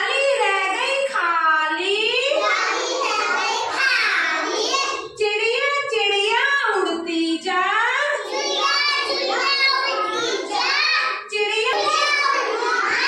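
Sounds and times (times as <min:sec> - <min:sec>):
children singing: 0:02.2 - 0:05.1, 0:08.2 - 0:13.0.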